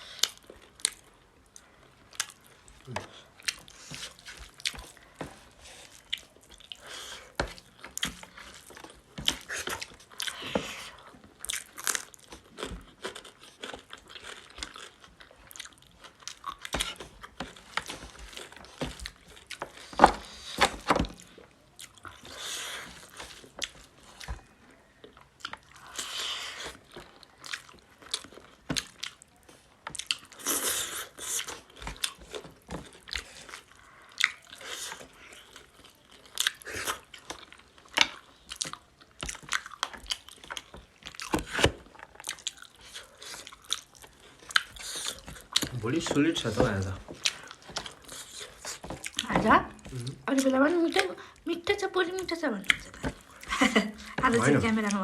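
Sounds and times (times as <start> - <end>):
close chewing and biting: 0.0 - 55.0
mouth and teeth clicks: 52.6 - 54.2.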